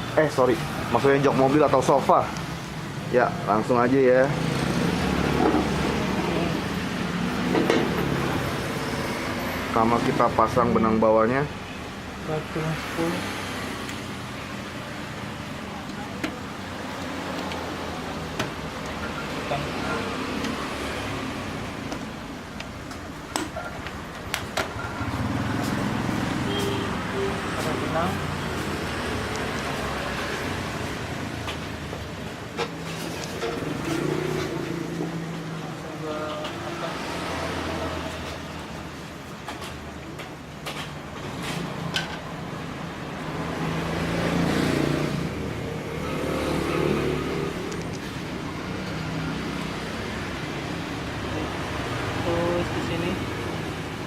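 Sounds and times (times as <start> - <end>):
road traffic rumbling: 0.0 - 54.0
motor vehicle passing: 24.7 - 35.6, 42.6 - 54.0
sharp clicks: 47.6 - 48.1.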